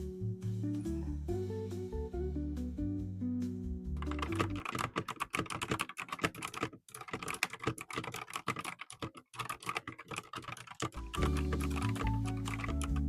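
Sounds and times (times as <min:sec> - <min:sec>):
background music: 0:00.0 - 0:04.8, 0:11.0 - 0:13.0
mechanical keyboard typing: 0:04.0 - 0:13.0.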